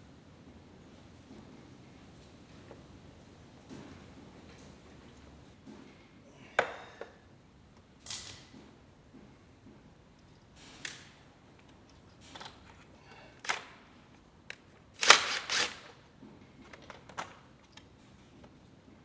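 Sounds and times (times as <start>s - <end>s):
hand tools clicking and scraping: 15.0s - 16.0s.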